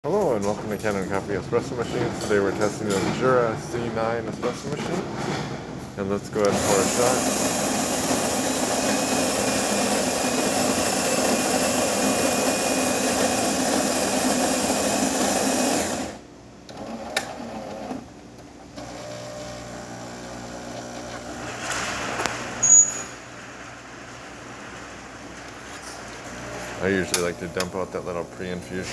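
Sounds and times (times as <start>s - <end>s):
coffee grinder running: 6.4s - 16.2s, 18.8s - 22.3s
espresso machine humming: 6.4s - 17.9s, 18.8s - 21.6s, 26.3s - 28.8s.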